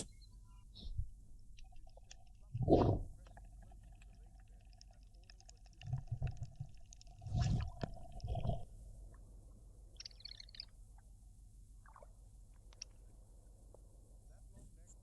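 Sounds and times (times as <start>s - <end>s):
faint hum: 0.0s - 15.0s
water splashing and gurgling: 1.7s - 8.7s.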